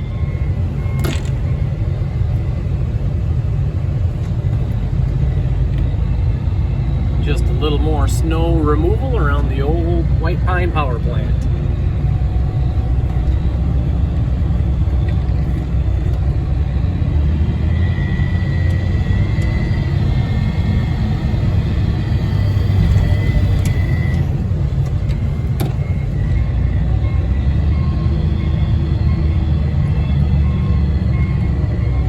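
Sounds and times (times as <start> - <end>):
loader engine rumbling: 0.0 - 32.0
faint high whine: 17.6 - 24.5.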